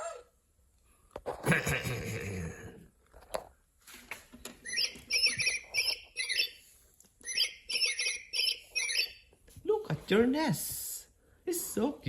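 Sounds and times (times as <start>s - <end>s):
electronic bird-like chirping toy: 4.6s - 9.3s.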